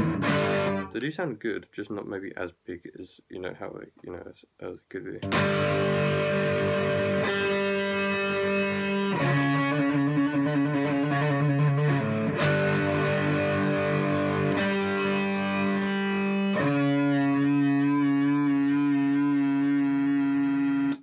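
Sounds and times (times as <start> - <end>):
electric twelve-string guitar chords: 0.0 - 1.0, 5.2 - 21.0.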